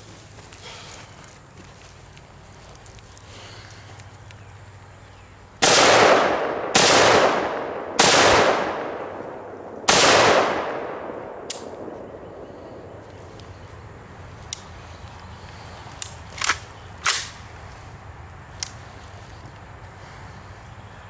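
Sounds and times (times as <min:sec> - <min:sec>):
gunshots with echo: 0:05.6 - 0:13.0.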